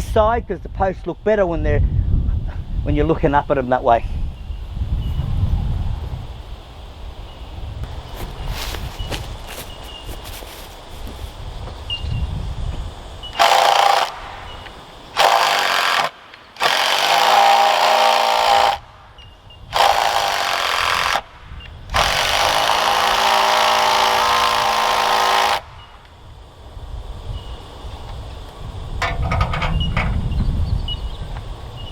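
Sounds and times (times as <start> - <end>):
drill driving screws into timber: 13.3 - 18.9, 19.7 - 21.3, 21.9 - 26.0.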